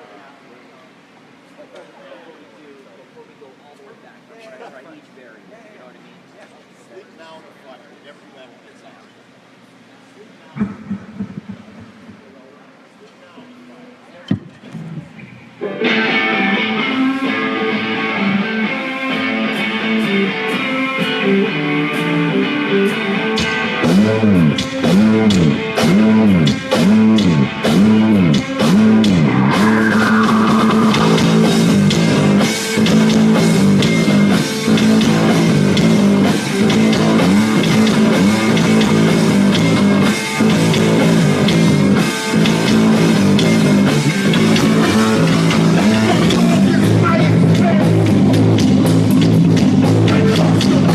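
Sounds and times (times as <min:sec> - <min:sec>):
distorted electric guitar: 0:10.5 - 0:12.9, 0:14.3 - 0:50.9
drum kit: 0:10.6 - 0:12.8, 0:19.4 - 0:50.9.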